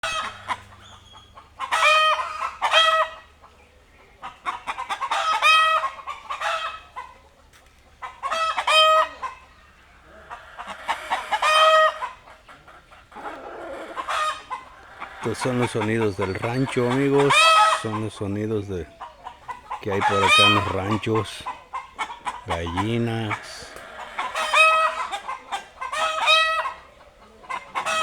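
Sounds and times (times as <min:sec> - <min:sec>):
chickens cackling: 0:00.0 - 0:28.0.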